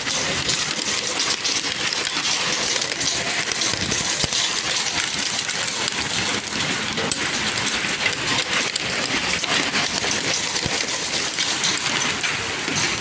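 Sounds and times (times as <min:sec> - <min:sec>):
hail pattering: 0:00.0 - 0:13.0.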